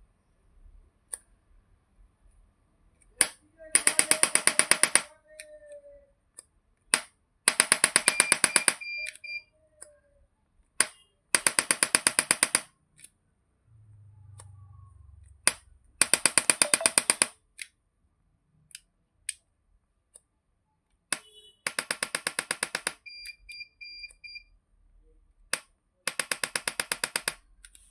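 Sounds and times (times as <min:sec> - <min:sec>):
adjusting gun rapid clicks: 0:10.8 - 0:13.1, 0:25.5 - 0:27.9.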